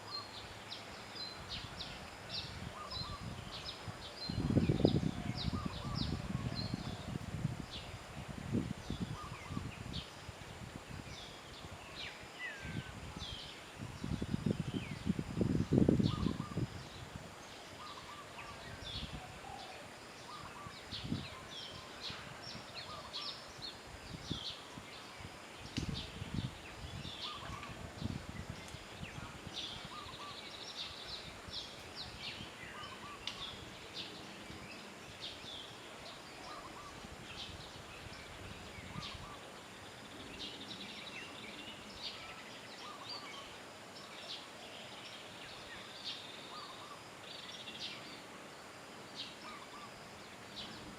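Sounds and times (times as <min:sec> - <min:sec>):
outdoor background noise: 0:00.0 - 0:50.9.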